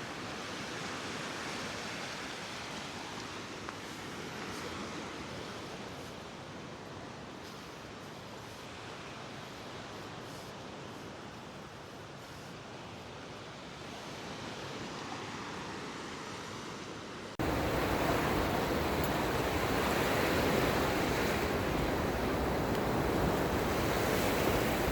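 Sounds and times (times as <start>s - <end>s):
waves breaking: 17.4s - 24.9s
wind noise on microphone: 17.4s - 24.9s.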